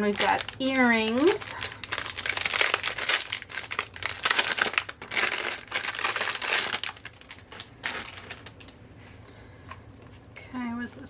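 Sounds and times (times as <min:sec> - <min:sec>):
packaging crinkling and rustling: 0:00.0 - 0:09.2.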